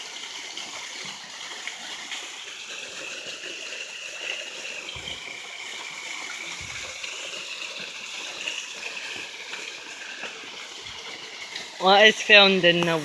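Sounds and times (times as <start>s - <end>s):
waterfall and stream rushing: 9.6s - 13.0s.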